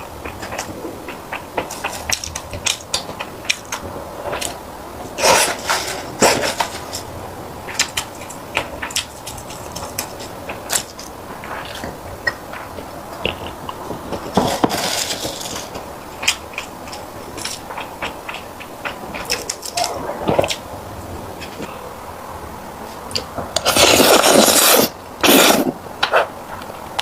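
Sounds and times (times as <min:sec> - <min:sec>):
close chewing with mouth clicks: 0:00.0 - 0:07.1, 0:07.7 - 0:20.6.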